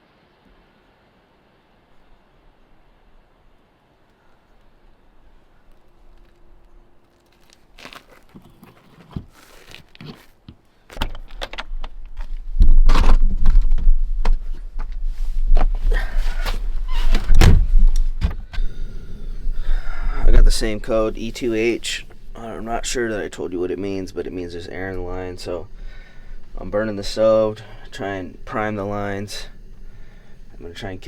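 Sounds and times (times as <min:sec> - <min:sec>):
clicks and knocks of handling things: 0:08.3 - 0:15.0
low rumble over microphone: 0:12.3 - 0:31.0.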